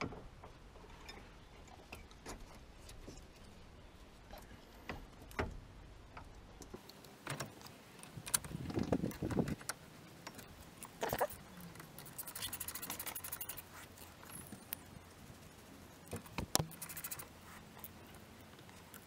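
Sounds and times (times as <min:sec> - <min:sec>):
tools and metal parts clicking: 0:08.0 - 0:13.6
even ticks: 0:08.0 - 0:13.7, 0:16.0 - 0:18.0.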